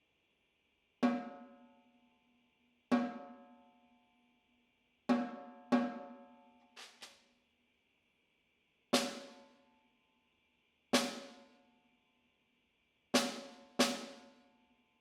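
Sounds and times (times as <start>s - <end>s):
snare drum strokes ringing: 6.8s - 7.2s, 9.0s - 9.4s, 11.0s - 11.4s, 13.2s - 14.2s.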